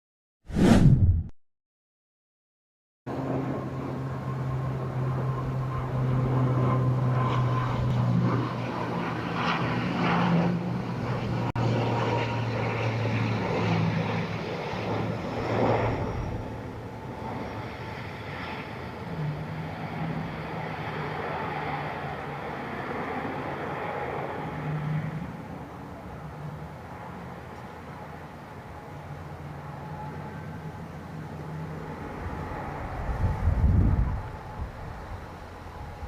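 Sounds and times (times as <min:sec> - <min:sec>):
gusty noise: 0:00.5 - 0:01.3, 0:32.3 - 0:36.0
turboprop engines droning: 0:03.1 - 0:36.0.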